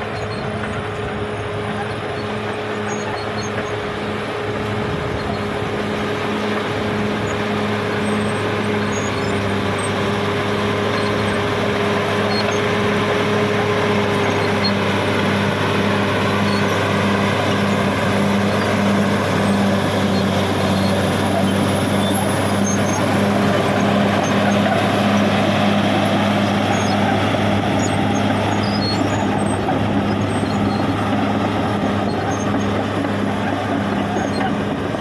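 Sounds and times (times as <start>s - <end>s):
bulldozer diesel engine humming: 0.0s - 35.0s.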